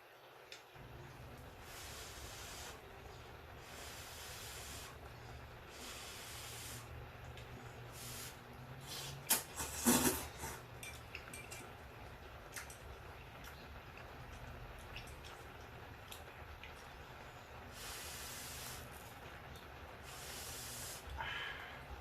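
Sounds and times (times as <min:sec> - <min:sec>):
soft hissing breaths: 0:00.8 - 0:10.7, 0:16.9 - 0:19.1, 0:19.9 - 0:22.0.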